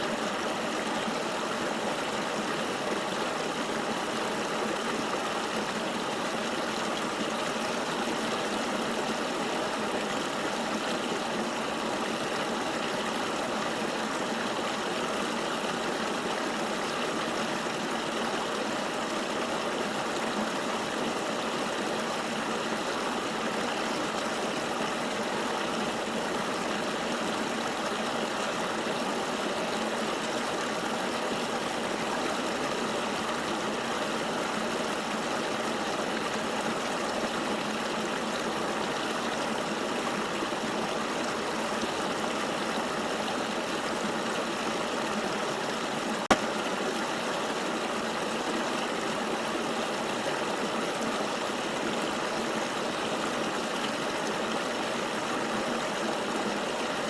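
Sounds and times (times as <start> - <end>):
river water flowing: 0.0 - 57.0.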